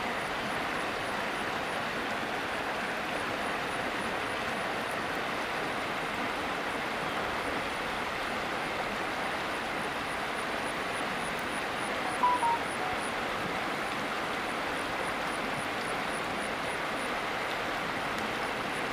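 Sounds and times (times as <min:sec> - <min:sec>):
flowing river water: 0:00.0 - 0:18.9
two-note chirp: 0:12.0 - 0:13.1.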